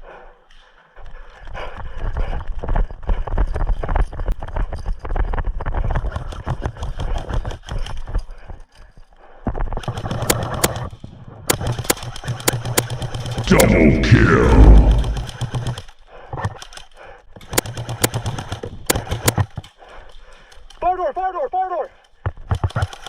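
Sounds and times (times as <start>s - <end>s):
airsoft rifle full-auto bursts: 17.4s - 19.5s.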